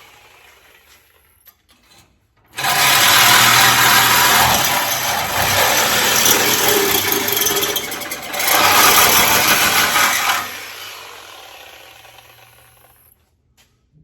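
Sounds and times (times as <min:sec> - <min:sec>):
power tool cutting sheet metal: 0:02.5 - 0:13.0.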